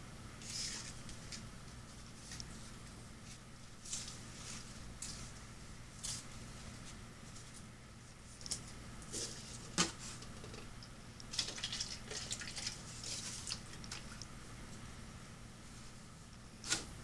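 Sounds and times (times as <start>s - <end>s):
leaves rustling: 0.4s - 7.6s
small water splashes: 11.3s - 12.8s
water dripping and pattering: 11.3s - 14.3s.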